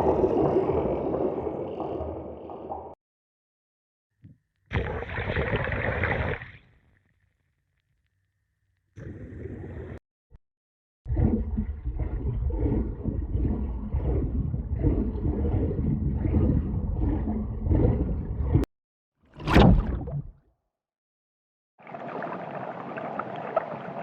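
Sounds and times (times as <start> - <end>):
water bubbling and gurgling: 0.0 - 3.0, 4.7 - 6.7, 11.1 - 18.7, 19.4 - 20.4.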